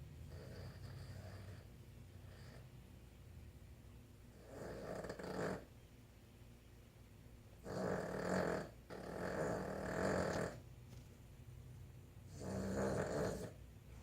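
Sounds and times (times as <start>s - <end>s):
dog snoring: 0.2s - 2.8s, 4.3s - 5.7s, 7.6s - 10.6s, 12.2s - 13.6s.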